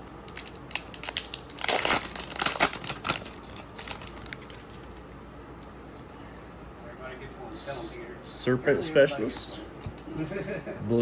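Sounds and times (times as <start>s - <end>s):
foil wrapper crinkling and tearing: 0.2s - 5.0s.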